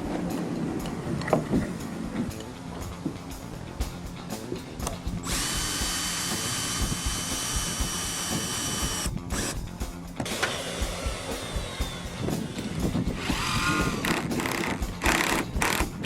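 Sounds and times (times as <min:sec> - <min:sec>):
power drill whine: 0:05.3 - 0:09.6, 0:10.3 - 0:15.8.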